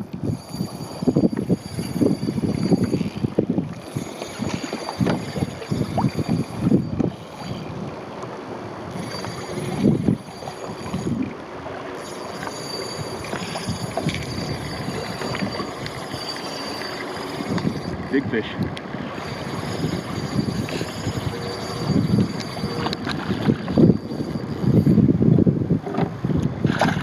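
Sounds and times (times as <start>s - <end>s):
wind buffeting microphone: 0.0s - 11.8s, 17.1s - 27.0s
water lapping on boat: 0.0s - 25.1s, 25.8s - 27.0s.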